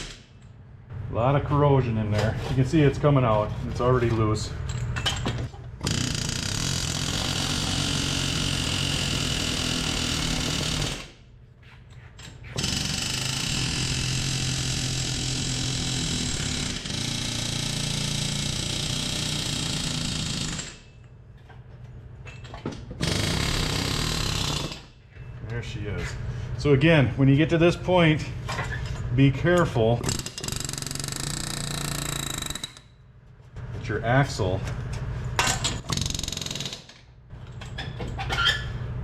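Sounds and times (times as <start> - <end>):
pneumatic air hammer rattling: 0.0 - 0.3, 5.8 - 11.2, 12.2 - 20.9, 22.4 - 24.9, 30.0 - 32.9, 35.4 - 38.8.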